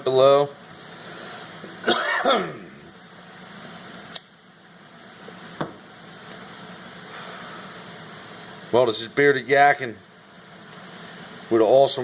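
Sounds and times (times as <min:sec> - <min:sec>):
man coughing: 0:01.8 - 0:02.7.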